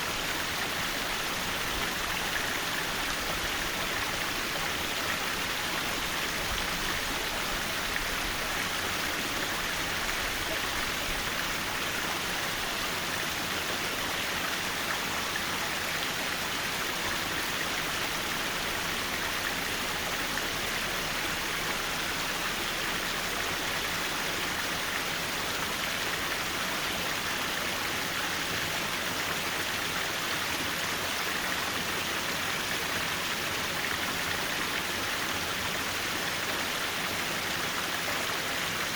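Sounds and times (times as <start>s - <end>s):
stream flowing over rocks: 0.0s - 38.9s.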